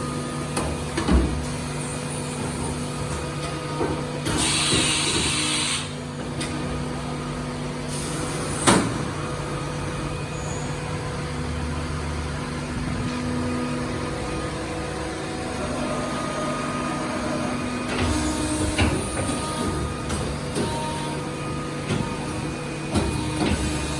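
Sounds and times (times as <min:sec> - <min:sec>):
milling machine hum: 0:00.0 - 0:23.9
burst of hiss and clatter: 0:04.2 - 0:05.9.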